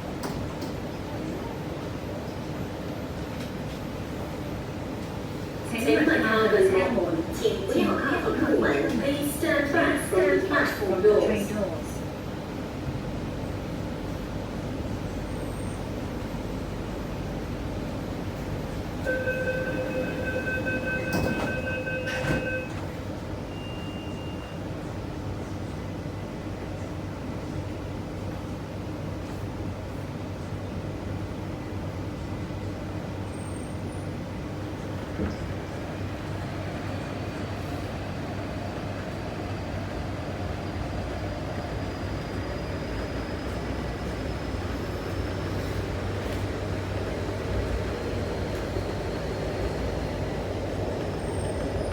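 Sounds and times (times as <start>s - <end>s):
train interior rumble: 0.0s - 51.9s.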